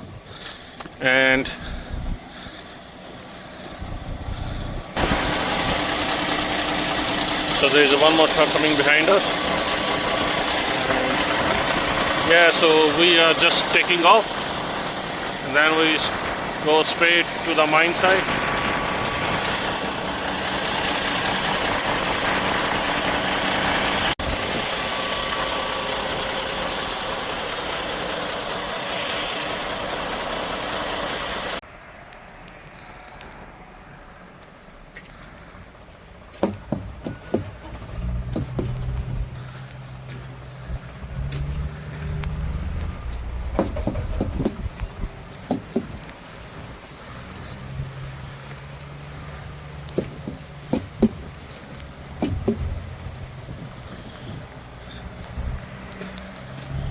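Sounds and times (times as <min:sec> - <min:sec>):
road noise hiss: 0:00.0 - 0:56.9
truck engine hum: 0:00.0 - 0:56.9
sharp clicks and knocks: 0:36.4 - 0:39.1, 0:43.4 - 0:46.2, 0:49.9 - 0:53.0.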